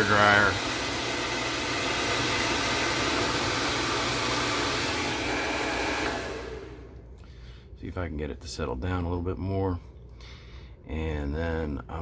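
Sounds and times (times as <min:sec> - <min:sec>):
hair dryer blowing: 0:00.0 - 0:07.1.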